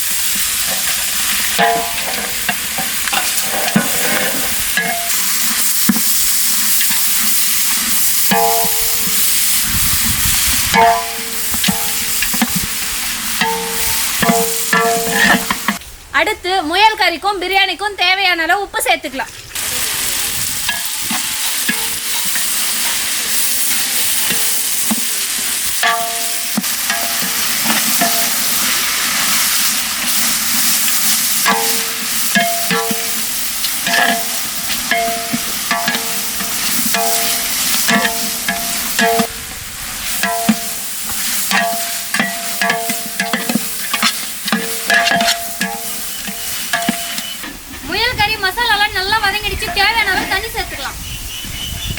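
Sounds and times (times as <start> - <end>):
meat sizzling in hot oil: 0.0 - 15.8, 19.5 - 47.7
metal ladle clanging on pot: 0.7 - 6.1, 6.7 - 9.2, 10.7 - 15.8, 20.6 - 39.3, 40.2 - 47.6.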